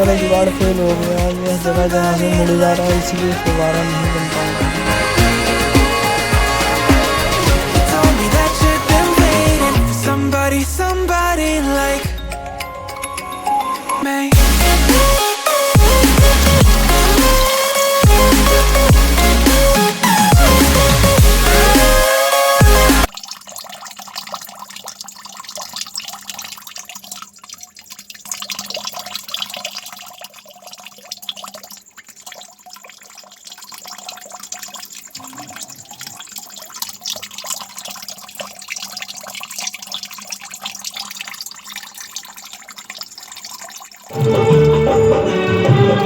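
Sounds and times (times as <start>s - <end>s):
water pump humming: 0.0s - 11.6s
fountain water splashing: 0.0s - 12.0s.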